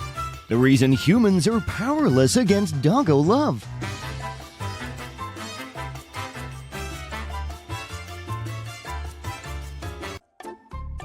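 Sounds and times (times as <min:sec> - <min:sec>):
bouncy latin background music: 0:00.0 - 0:11.0.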